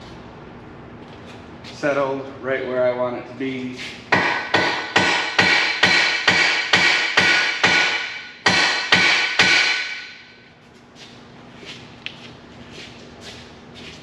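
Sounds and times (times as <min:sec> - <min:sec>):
hammer striking ringing steel: 0:04.2 - 0:10.3.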